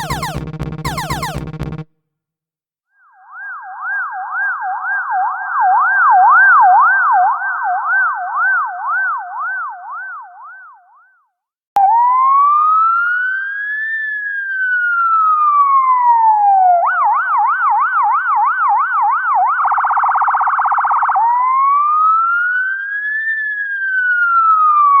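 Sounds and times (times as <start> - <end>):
emergency vehicle siren: 0.0 - 1.9, 3.2 - 10.6, 11.8 - 25.0.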